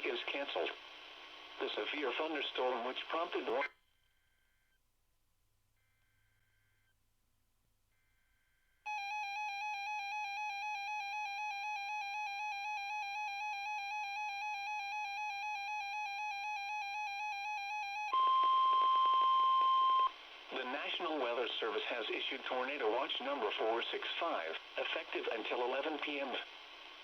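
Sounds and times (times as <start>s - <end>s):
static hiss: 0.0s - 3.7s, 20.1s - 27.0s
warbling electronic alert alarm: 8.9s - 18.7s.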